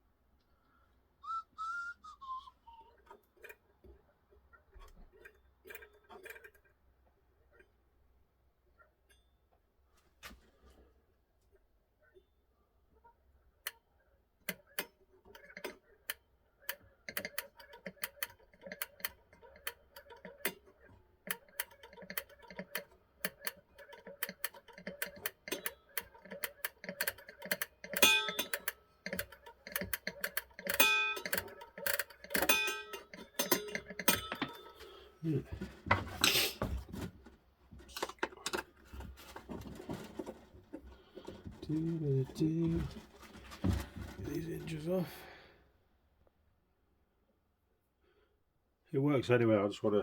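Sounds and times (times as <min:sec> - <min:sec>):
metal clock parts clicking: 0:14.4 - 0:35.0
ringing metallic clinks: 0:30.7 - 0:34.8.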